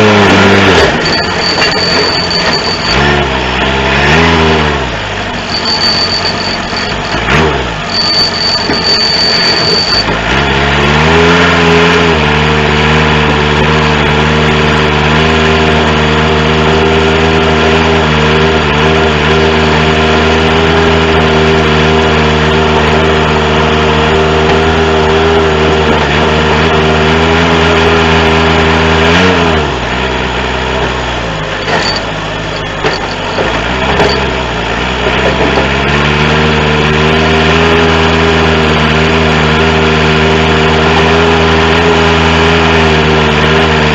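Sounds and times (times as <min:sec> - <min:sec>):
diesel engine revving: 0:00.0 - 0:43.9.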